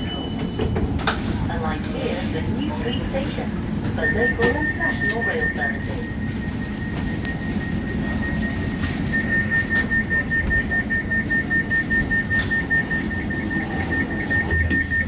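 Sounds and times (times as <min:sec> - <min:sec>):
low tram hum: 0:00.0 - 0:15.0
rapid high-pitched door beeping: 0:03.9 - 0:15.0.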